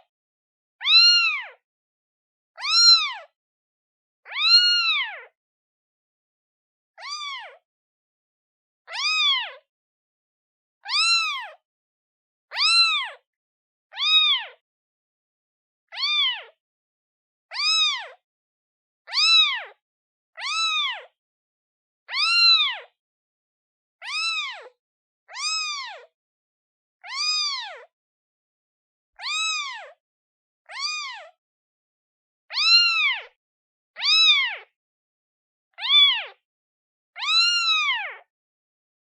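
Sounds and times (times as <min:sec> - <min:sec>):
kitten meowing: 0:00.8 - 0:01.5, 0:02.6 - 0:03.3, 0:04.3 - 0:05.3, 0:07.0 - 0:07.6, 0:08.9 - 0:09.5, 0:10.8 - 0:11.5, 0:12.5 - 0:13.2, 0:13.9 - 0:14.6, 0:15.9 - 0:16.5, 0:17.5 - 0:18.2, 0:19.1 - 0:19.7, 0:20.4 - 0:21.1, 0:22.1 - 0:22.9, 0:24.0 - 0:24.7, 0:25.3 - 0:26.0, 0:27.0 - 0:27.9, 0:29.2 - 0:29.9, 0:30.7 - 0:31.3, 0:32.5 - 0:33.4, 0:34.0 - 0:34.7, 0:35.8 - 0:36.4, 0:37.2 - 0:38.3.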